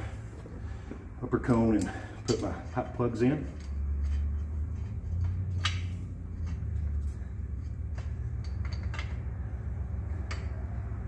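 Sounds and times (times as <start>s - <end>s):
low hum: 0.0s - 11.0s
metal clicks and clinks: 7.9s - 9.4s.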